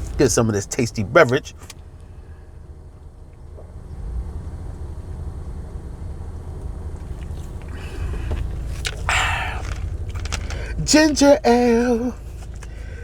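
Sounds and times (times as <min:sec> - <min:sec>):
person drinking soda: 0:07.2 - 0:10.8
loud breathy exhale: 0:09.0 - 0:09.6.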